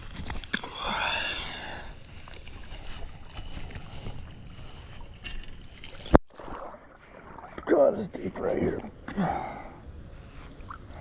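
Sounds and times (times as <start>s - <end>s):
water and wind noise: 0.0s - 11.0s.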